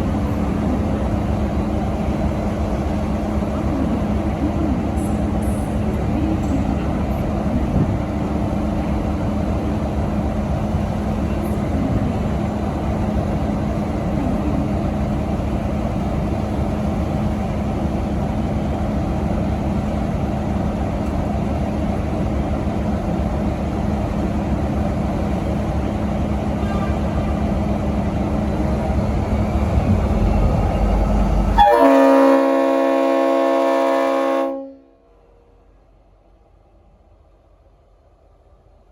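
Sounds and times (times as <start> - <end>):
diesel locomotive engine drone: 0.0 - 38.9
train horn chord: 31.6 - 35.2.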